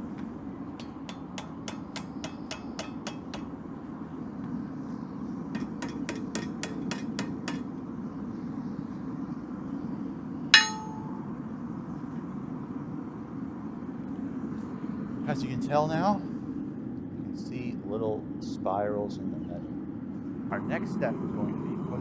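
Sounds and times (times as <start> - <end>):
ringing metal clang: 0.8 - 3.5, 5.6 - 7.6, 10.6 - 11.3
hammer striking steel bar: 0.8 - 3.6, 5.6 - 7.7, 10.6 - 11.3.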